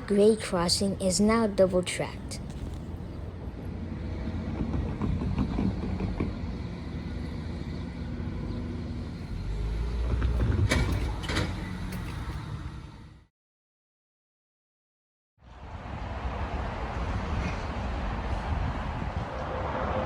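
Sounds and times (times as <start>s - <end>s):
road vehicle rumble: 0.0s - 13.3s, 15.4s - 20.0s.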